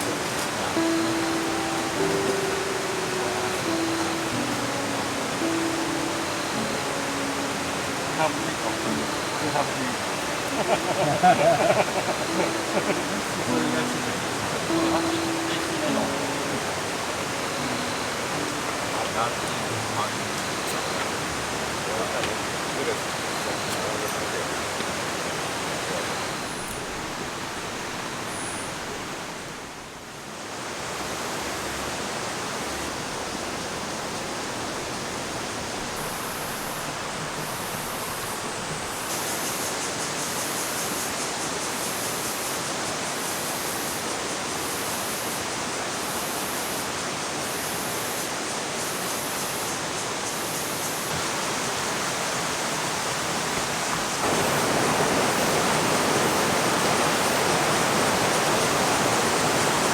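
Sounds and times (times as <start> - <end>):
rushing mountain stream: 0.0 - 59.9.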